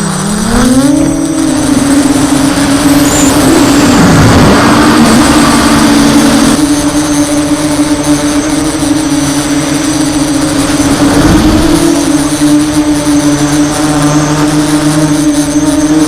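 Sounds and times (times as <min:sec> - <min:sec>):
drone motors humming: 0:00.0 - 0:16.0
low rumble: 0:00.4 - 0:14.0.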